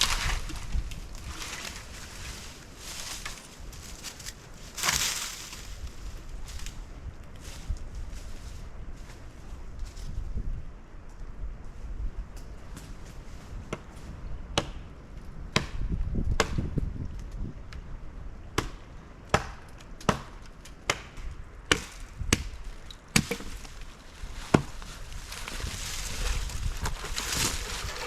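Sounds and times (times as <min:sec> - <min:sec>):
axe chopping wood: 0:18.6 - 0:22.5, 0:23.1 - 0:23.7, 0:24.4 - 0:28.0.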